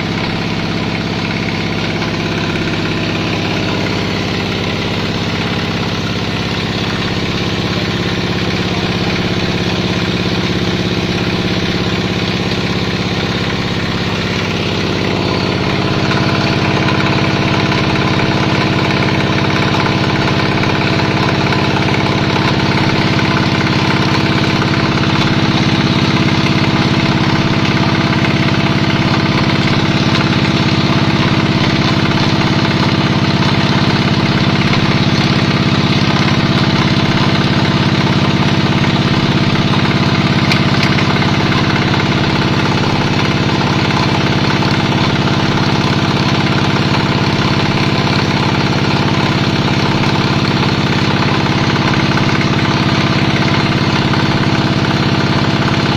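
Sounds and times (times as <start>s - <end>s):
pellet mill mechanical drone: 0.0s - 55.9s.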